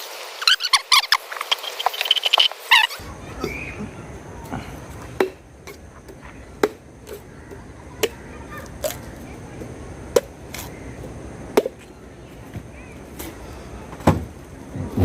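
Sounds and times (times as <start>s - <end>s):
machete chopping coconut: 5.2s - 8.2s.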